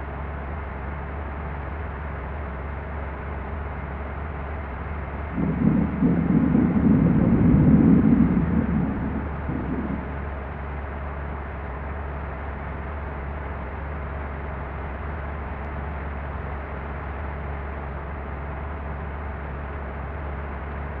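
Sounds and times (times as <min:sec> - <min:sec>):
vehicle engine hum: 0:03.0 - 0:15.7
road and wind noise: 0:03.7 - 0:12.9.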